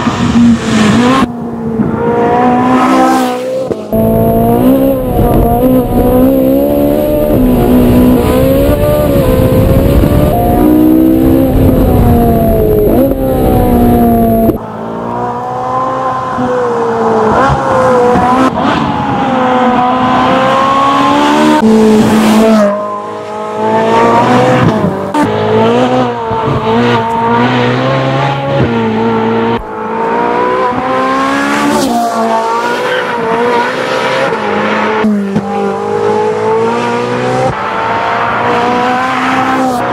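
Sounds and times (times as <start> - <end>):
sports car engine revving: 0.0 - 18.8
wind rumble: 4.0 - 14.6.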